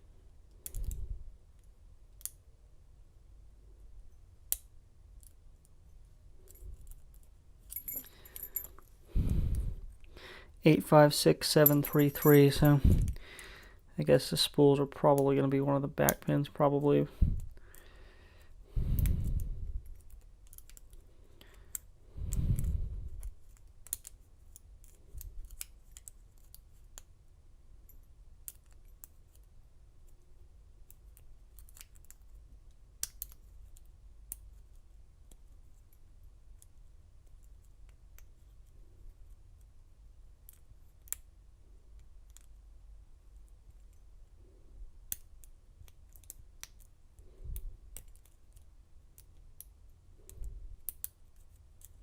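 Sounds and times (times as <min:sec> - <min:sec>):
dull thumps handling lock: 0:11.6 - 0:12.9.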